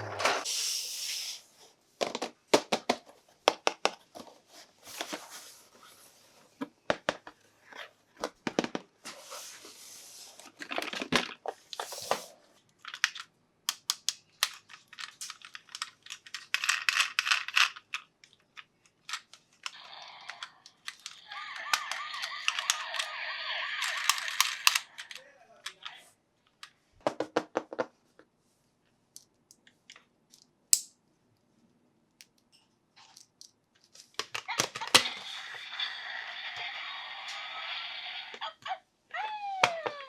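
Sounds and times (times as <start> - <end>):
plastic toys clicking and crinkling: 10.4 - 26.8, 32.2 - 40.0
toy electronic siren: 19.8 - 25.0, 35.1 - 38.6.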